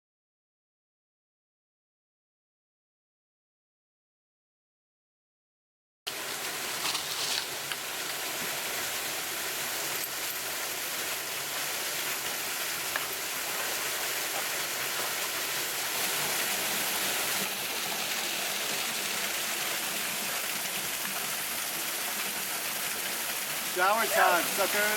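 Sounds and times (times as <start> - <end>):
waterfall rushing: 6.1 - 24.9.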